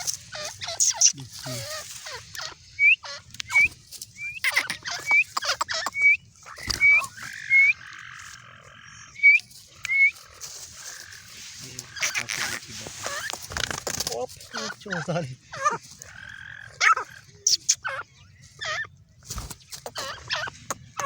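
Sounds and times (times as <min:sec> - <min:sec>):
sharp clicking bird notes: 0:03.3 - 0:08.4, 0:09.2 - 0:10.3, 0:18.7 - 0:21.0.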